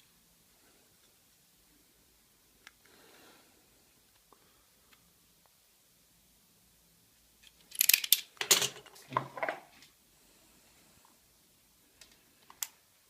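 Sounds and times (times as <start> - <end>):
small parts clicking and rattling: 7.4 - 9.0.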